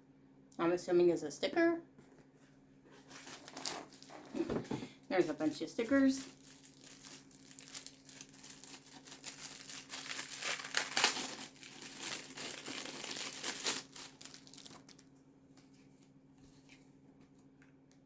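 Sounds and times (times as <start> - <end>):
packaging crinkling and tearing: 3.0 - 4.4, 5.9 - 15.1.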